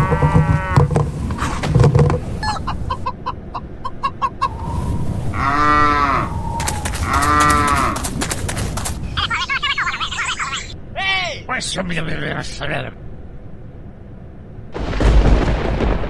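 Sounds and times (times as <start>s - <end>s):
hen clucking: 0.0s - 1.0s, 1.7s - 4.7s, 5.4s - 8.2s, 9.1s - 10.7s
cow mooing: 5.3s - 6.3s, 7.0s - 8.1s.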